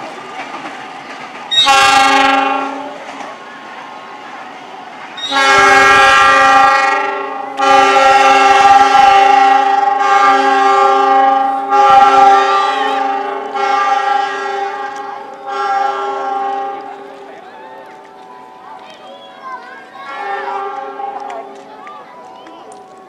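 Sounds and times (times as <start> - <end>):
train multi-tone air horn: 1.4 - 4.2, 5.1 - 18.1, 19.2 - 21.8.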